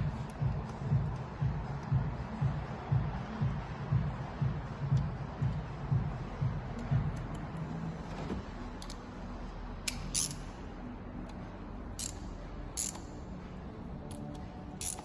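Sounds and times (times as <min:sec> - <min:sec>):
tools clicking on engine parts: 0:09.8 - 0:10.5, 0:12.0 - 0:12.2, 0:12.8 - 0:13.1, 0:14.0 - 0:15.0.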